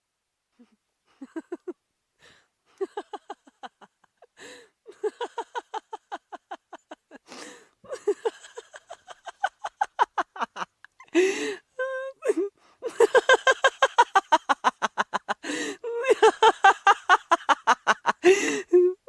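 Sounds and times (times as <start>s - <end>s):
person laughing hard: 1.2s - 1.8s, 2.8s - 19.0s
gasping in-breath: 4.4s - 4.8s, 7.2s - 7.8s, 11.1s - 11.7s, 15.4s - 15.8s, 18.2s - 18.8s.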